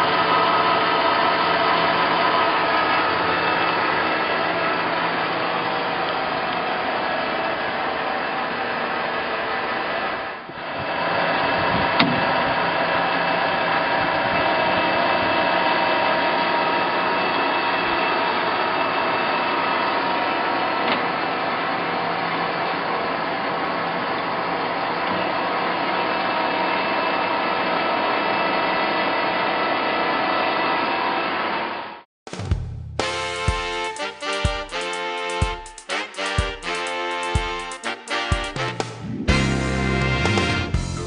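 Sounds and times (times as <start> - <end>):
lathe running with whine: 0.0 - 32.0.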